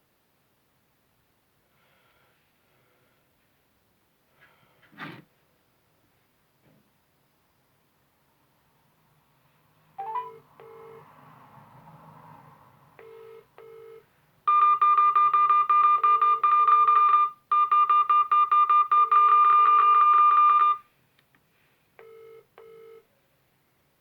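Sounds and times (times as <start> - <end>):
faint short beeps: 10.0 - 10.9
phone electronic ringtone: 10.0 - 11.1, 13.0 - 20.8.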